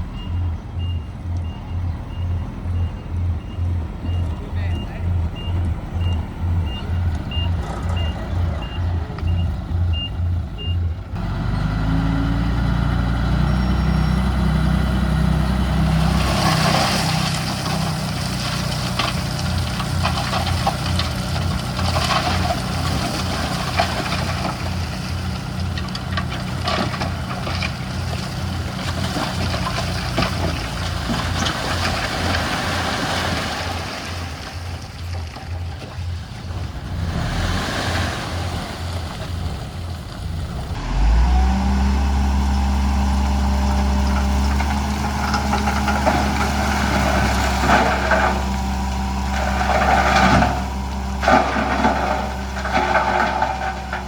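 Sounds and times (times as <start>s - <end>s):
reversing alarm beeping: 0.0s - 10.9s
diesel engine revving: 0.0s - 54.0s.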